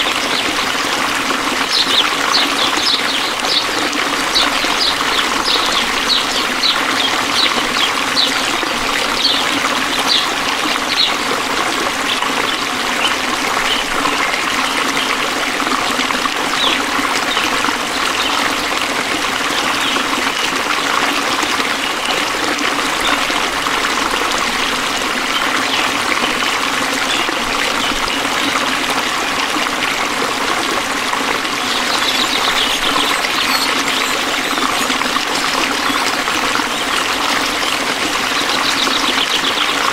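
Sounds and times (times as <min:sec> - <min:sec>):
stream trickling: 0:00.0 - 0:39.9
short high chirps: 0:31.8 - 0:36.0.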